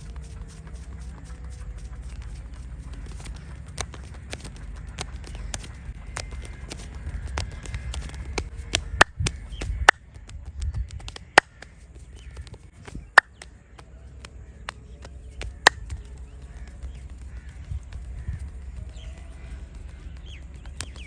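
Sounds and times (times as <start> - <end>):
hands rubbing on skin: 0.0 - 10.0
sharp slaps on head: 3.3 - 10.0.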